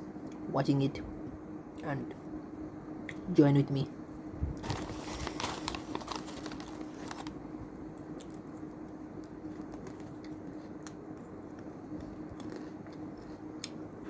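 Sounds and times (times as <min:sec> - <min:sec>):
steady low hum: 0:00.0 - 0:14.0
chewing crunchy snacks: 0:04.6 - 0:07.4, 0:08.0 - 0:14.0.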